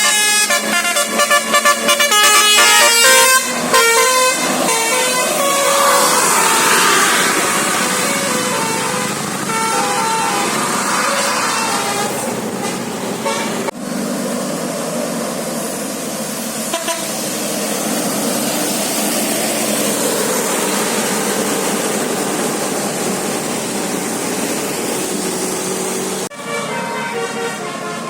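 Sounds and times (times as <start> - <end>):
bus musical air horn: 0.0 - 13.8, 16.7 - 17.3, 26.2 - 28.0
bus engine and road noise: 0.0 - 28.0.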